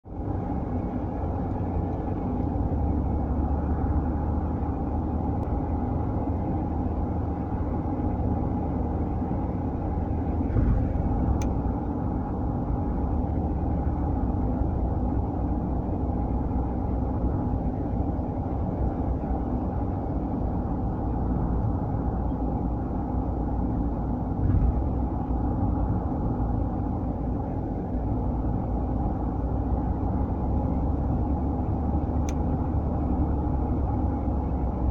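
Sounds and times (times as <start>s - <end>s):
car low rumble: 0.0s - 34.9s
car bumps: 24.4s - 25.0s.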